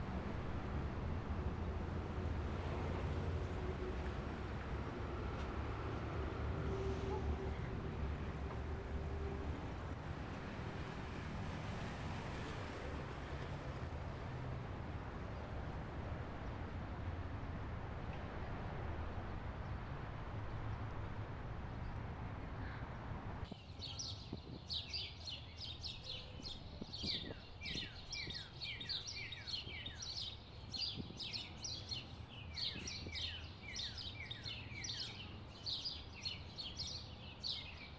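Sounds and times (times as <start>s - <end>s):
many birds chirping: 23.5s - 37.9s.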